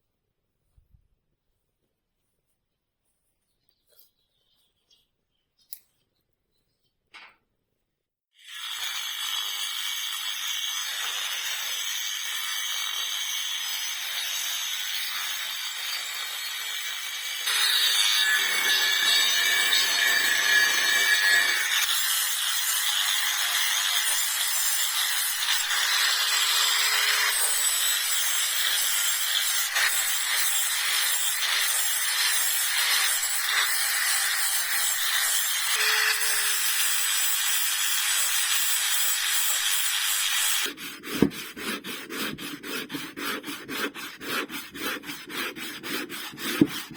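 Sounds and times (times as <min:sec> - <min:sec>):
wood scraping and sawing: 0:38.8 - 0:46.9.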